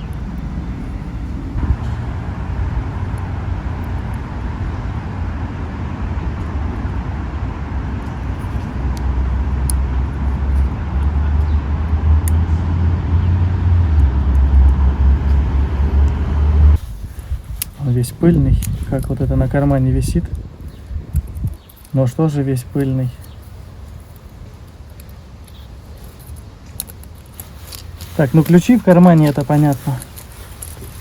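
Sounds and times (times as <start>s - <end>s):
low rumble with hiss: 0.0s - 31.0s.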